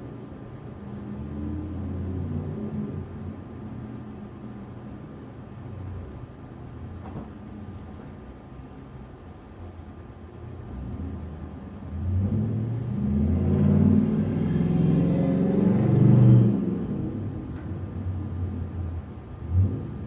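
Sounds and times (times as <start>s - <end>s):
street traffic rumbling: 0.0s - 20.0s
vehicle engine accelerating: 10.7s - 20.0s.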